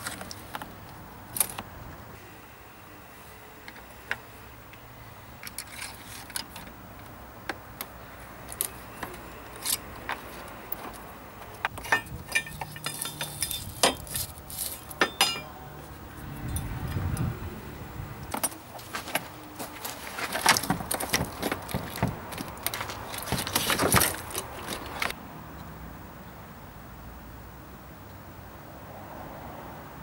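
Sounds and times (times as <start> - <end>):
small metal objects clinking: 11.8 - 15.5.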